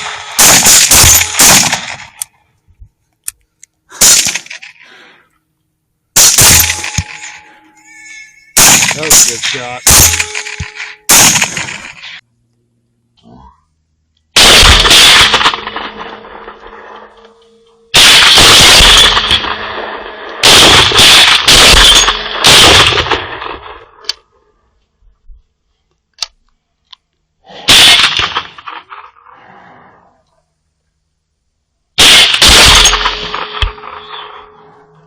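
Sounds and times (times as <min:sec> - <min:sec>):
rifle shots echoing: 0:00.0 - 0:02.2, 0:03.9 - 0:04.7, 0:06.2 - 0:07.5, 0:08.6 - 0:12.2, 0:14.4 - 0:17.1, 0:17.9 - 0:24.0, 0:27.7 - 0:29.2, 0:32.0 - 0:34.6.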